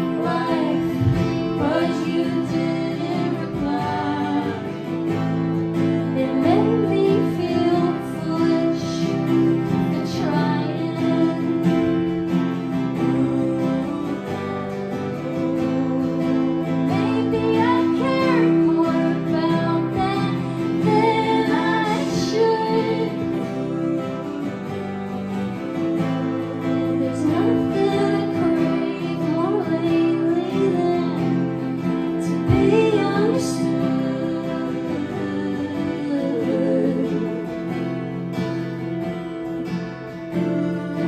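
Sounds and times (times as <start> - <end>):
acoustic guitar playing: 0.0 - 41.0
woman singing: 0.0 - 41.0.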